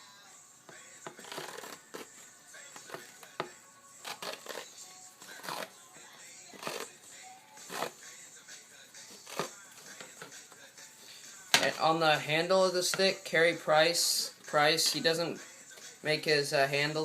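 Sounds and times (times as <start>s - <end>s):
faint music: 0.0s - 17.0s
grip tape ripping: 1.2s - 2.2s, 4.0s - 4.7s, 5.3s - 5.7s, 6.5s - 7.0s, 9.2s - 9.6s.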